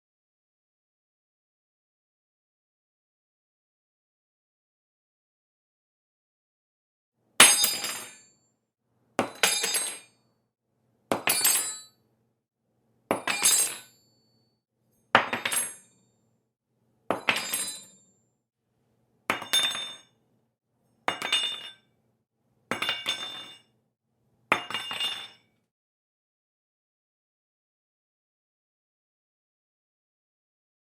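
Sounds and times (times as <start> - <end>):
silverware clattering on floor: 15.1 - 15.9, 17.2 - 18.0.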